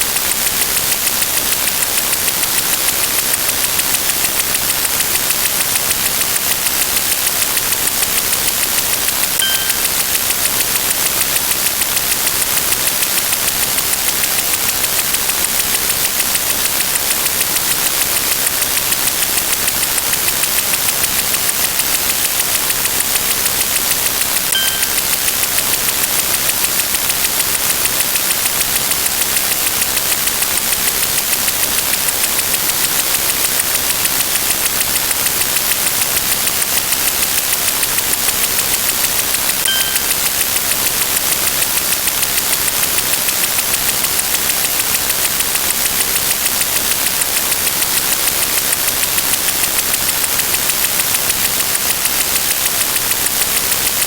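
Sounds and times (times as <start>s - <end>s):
short high beep: 9.4s - 10.0s, 24.6s - 25.1s, 39.7s - 40.2s.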